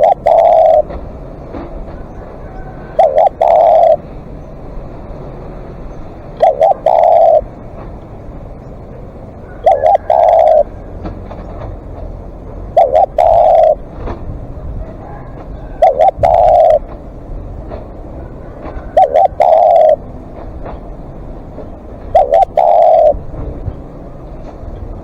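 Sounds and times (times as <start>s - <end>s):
dove cooing: 0.0s - 4.2s, 6.3s - 7.6s, 9.4s - 11.2s, 12.6s - 17.0s, 18.3s - 20.2s, 21.9s - 23.7s.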